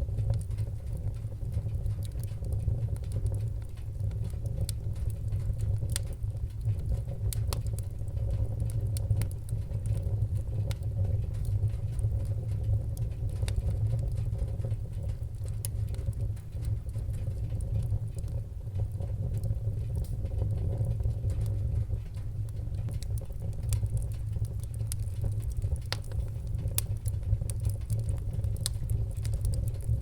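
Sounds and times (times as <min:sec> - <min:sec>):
fire pops and snaps: 0:00.0 - 0:30.0
low rumble of flames: 0:00.0 - 0:30.0.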